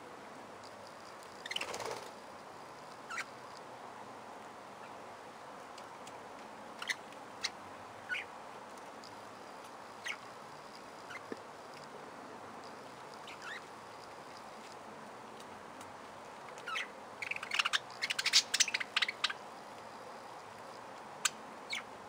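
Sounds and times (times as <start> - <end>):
background hiss: 0.0 - 22.0
budgerigars chirping: 1.4 - 1.9, 3.1 - 3.3, 6.8 - 8.3, 13.2 - 13.7, 16.7 - 19.4, 21.2 - 21.8.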